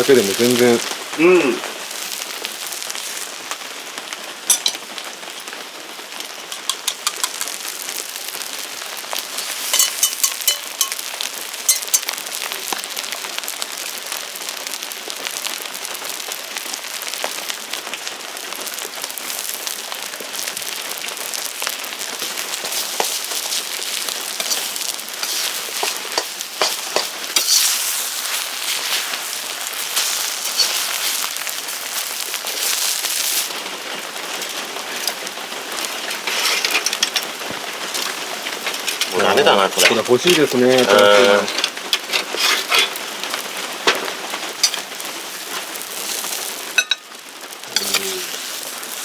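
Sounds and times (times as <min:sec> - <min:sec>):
rice sizzling in a pan: 0:00.0 - 0:49.0
utensil clicking against pan: 0:06.2 - 0:07.6, 0:09.7 - 0:11.0, 0:11.7 - 0:12.1, 0:24.4 - 0:27.7.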